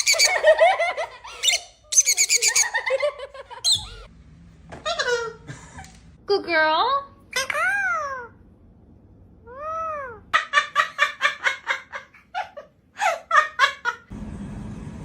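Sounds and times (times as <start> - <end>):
parrot calling and cackling: 0.0 - 0.6, 1.3 - 2.9, 3.6 - 4.1.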